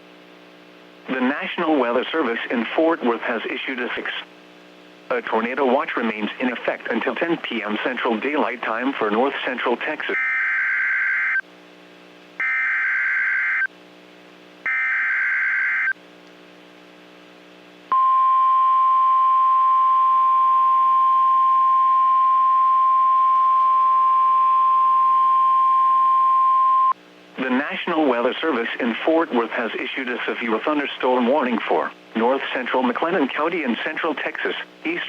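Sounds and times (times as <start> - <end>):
steady warning alarm tone: 10.2 - 11.4, 12.4 - 13.7, 14.7 - 16.0.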